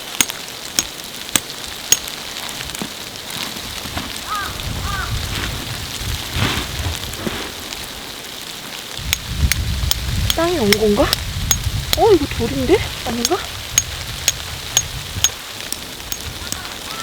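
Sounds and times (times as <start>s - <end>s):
tool tapping on stone: 0.2s - 2.9s, 9.1s - 12.1s, 13.1s - 16.7s
hand tool scraping stony ground: 0.2s - 4.4s, 5.2s - 8.0s.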